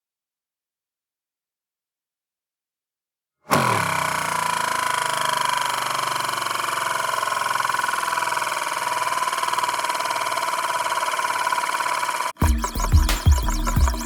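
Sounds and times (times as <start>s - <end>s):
spinning object whirring: 3.6s - 14.0s.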